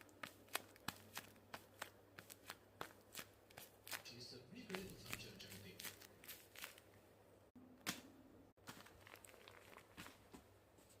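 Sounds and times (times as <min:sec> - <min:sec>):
paper crinkling: 0:00.0 - 0:07.0, 0:08.6 - 0:10.4.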